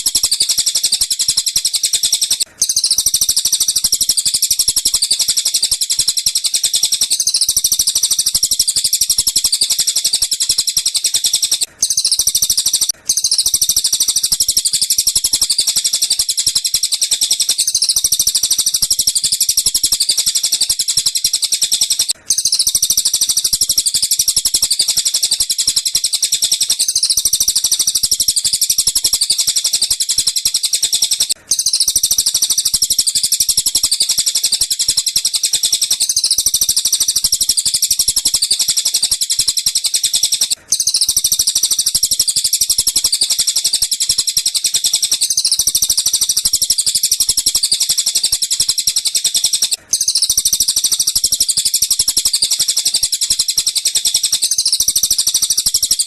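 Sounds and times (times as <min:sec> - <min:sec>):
rapid high-pitched bird chirping: 0:00.0 - 0:56.0.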